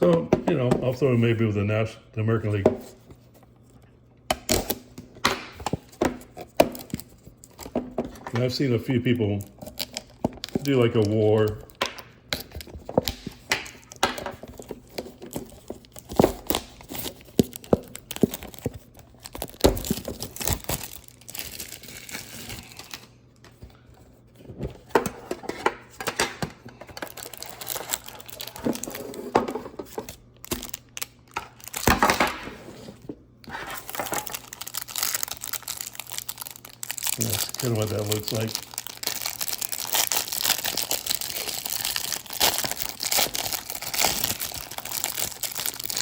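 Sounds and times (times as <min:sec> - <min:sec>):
plastic wrapping crinkling and tearing: 0:08.4 - 0:23.2, 0:26.9 - 0:32.4, 0:33.4 - 0:46.0.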